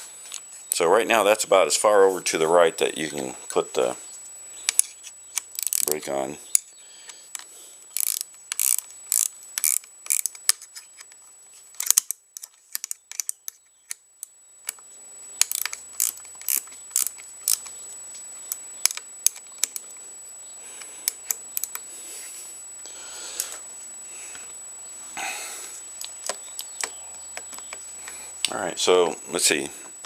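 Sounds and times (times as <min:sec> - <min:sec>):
ratcheting wrench clicking: 0:04.7 - 0:06.7, 0:07.9 - 0:10.6, 0:11.8 - 0:14.0, 0:15.4 - 0:17.7.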